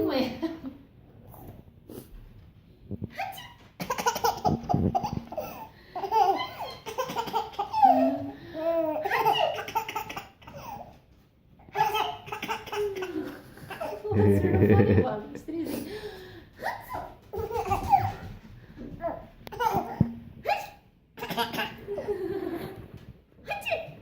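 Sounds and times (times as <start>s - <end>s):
baby laughing: 3.2s - 11.0s, 11.7s - 15.1s, 17.4s - 18.3s.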